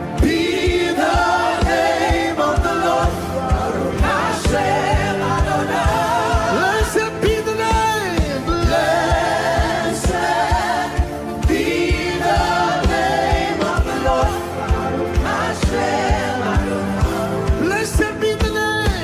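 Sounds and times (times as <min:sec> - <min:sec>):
choir and congregation singing: 0:00.0 - 0:19.0.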